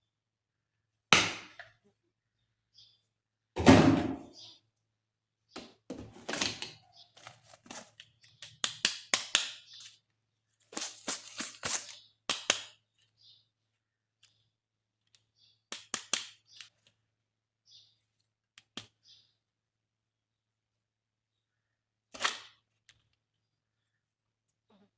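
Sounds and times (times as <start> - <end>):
packaging rustling: 6.1 - 8.3, 10.7 - 11.9.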